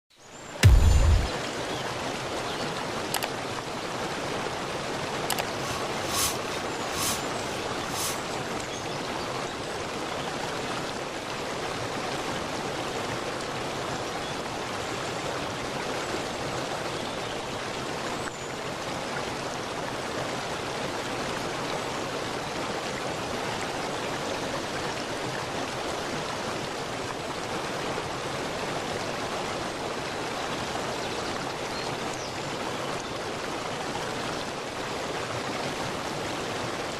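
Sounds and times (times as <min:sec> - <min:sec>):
stream water rushing: 0:03.6 - 0:08.9
short high-pitched sounds: 0:05.3 - 0:08.2.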